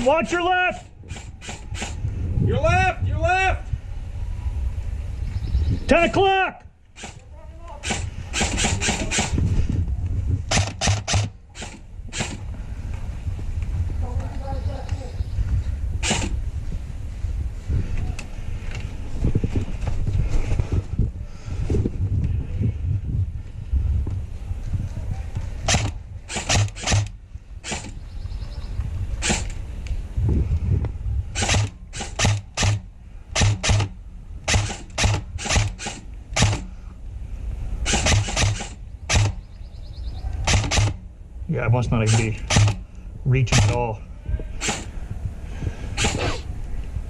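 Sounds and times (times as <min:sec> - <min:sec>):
airsoft gun shots: 0:07.8 - 0:09.4, 0:10.5 - 0:12.4, 0:16.0 - 0:16.4, 0:25.7 - 0:28.0, 0:29.2 - 0:29.6, 0:31.4 - 0:36.7, 0:37.8 - 0:39.4, 0:40.4 - 0:41.0, 0:42.0 - 0:42.8, 0:43.5 - 0:43.9, 0:44.6 - 0:45.0
low thumping and rustle: 0:15.4 - 0:22.4.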